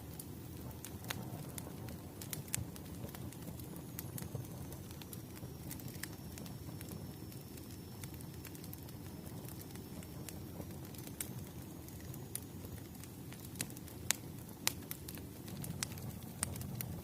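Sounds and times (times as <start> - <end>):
firewood crackling and popping: 0.0 - 17.0
low rumble of flame: 0.0 - 17.0.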